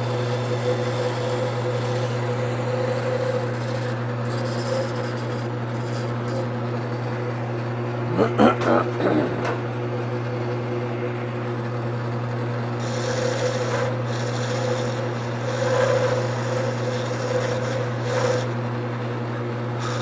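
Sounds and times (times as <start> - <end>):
turning tool scraping wood: 0.0 - 7.2, 12.1 - 20.0
wood lathe motor running: 0.0 - 20.0.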